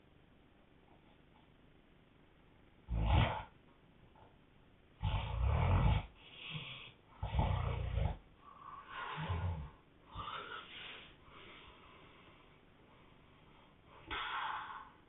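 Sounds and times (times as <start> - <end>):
man snoring heavily: 2.9 - 3.4, 5.0 - 8.2, 9.1 - 9.8
soft breaths: 5.0 - 15.0.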